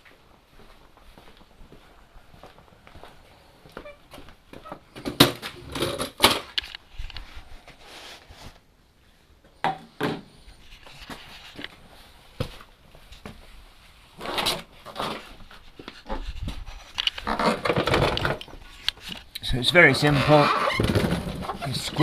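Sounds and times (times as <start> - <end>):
objects clattering and knocking: 4.6 - 6.8, 14.2 - 19.3, 19.9 - 22.0
rustling of objects handled: 10.4 - 22.0.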